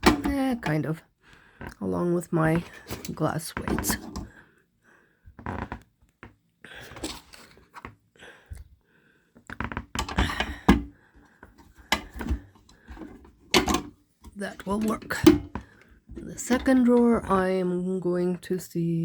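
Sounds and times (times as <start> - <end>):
tools clunking into metal toolbox: 0.0 - 0.4, 11.9 - 13.9, 14.5 - 15.6.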